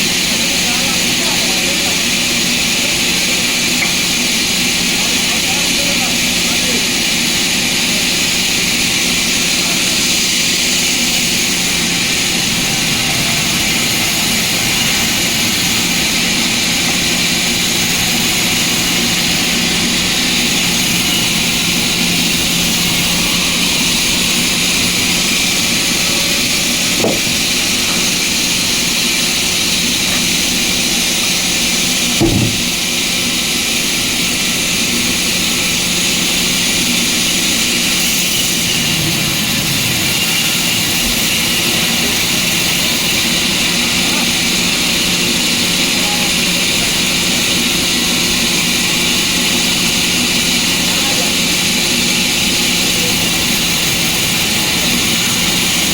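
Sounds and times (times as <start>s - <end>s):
sawmill machinery humming: 0.0s - 55.9s
short knock: 27.0s - 27.4s, 32.2s - 32.7s.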